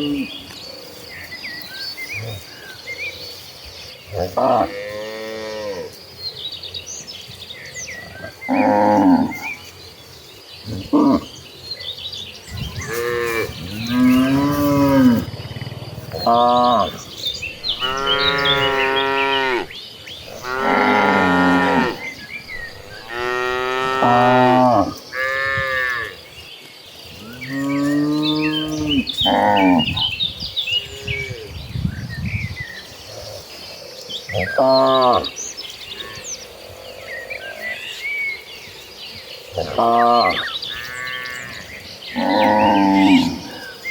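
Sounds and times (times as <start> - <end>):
cattle mooing: 12.8 - 15.4, 16.1 - 26.2, 42.2 - 43.6.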